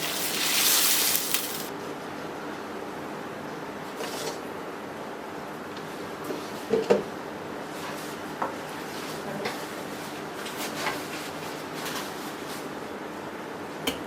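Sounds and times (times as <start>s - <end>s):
steady hiss: 0.0s - 1.7s.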